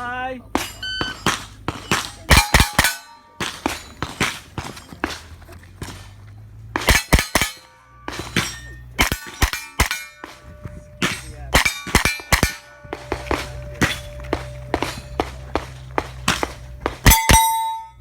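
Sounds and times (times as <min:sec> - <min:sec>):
steel plate clanging: 0:00.0 - 0:18.0
rapid gunshots: 0:06.8 - 0:17.3.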